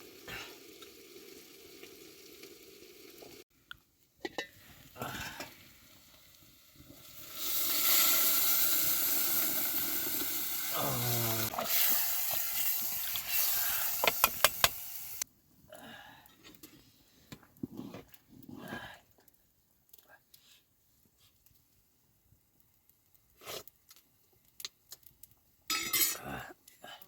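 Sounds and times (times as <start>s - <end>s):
food sizzling in hot oil: 0.0s - 3.4s, 4.3s - 15.3s.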